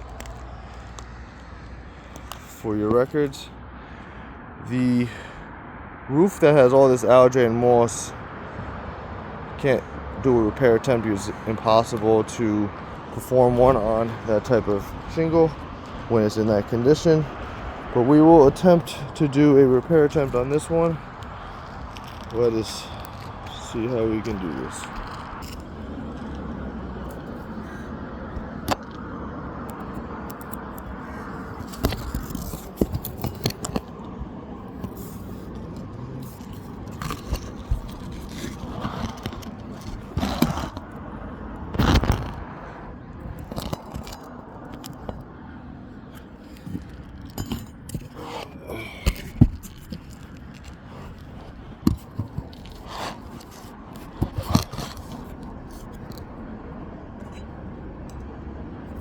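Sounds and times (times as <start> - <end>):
scraping of roof shingles: 10.8 - 28.7, 30.4 - 34.0, 34.6 - 41.0, 46.0 - 56.2
sharp clicks of roof shingles: 12.8 - 45.4, 46.0 - 56.4.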